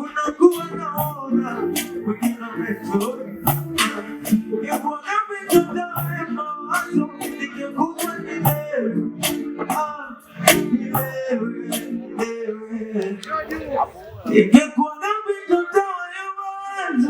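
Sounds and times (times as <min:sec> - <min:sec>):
sharp percussion hits: 0:00.5 - 0:04.9, 0:05.5 - 0:06.2, 0:06.8 - 0:07.4, 0:08.0 - 0:12.3
music with steady beat: 0:00.5 - 0:12.4.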